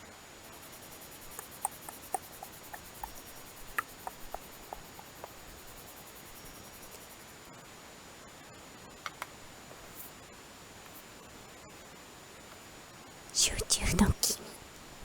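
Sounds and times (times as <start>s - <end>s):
faint steady hiss: 0.0s - 15.0s
light irregular ticks and taps: 0.5s - 7.3s, 9.0s - 9.3s.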